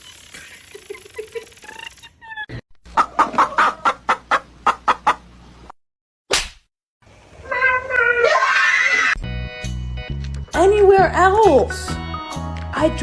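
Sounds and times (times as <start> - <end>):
fowl clucking: 2.9 - 5.2.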